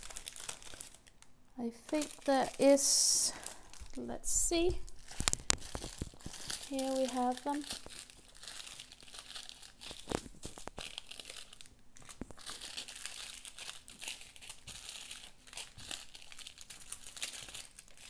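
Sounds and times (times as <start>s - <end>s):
plastic bags crinkling: 0.0s - 18.0s
small clicks and taps: 5.2s - 6.3s.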